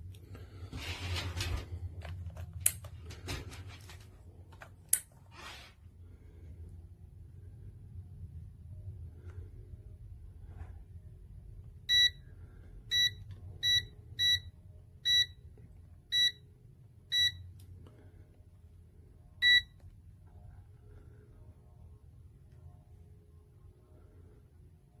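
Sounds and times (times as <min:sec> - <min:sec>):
multimeter beeping: 0:11.9 - 0:12.2, 0:12.9 - 0:15.4, 0:16.1 - 0:16.4, 0:17.1 - 0:17.4, 0:19.4 - 0:19.8.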